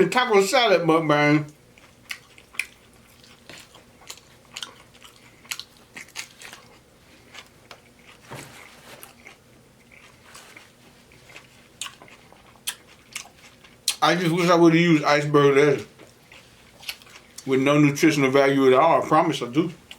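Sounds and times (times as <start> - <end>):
chewing crunchy food: 1.5 - 14.6, 15.5 - 17.8.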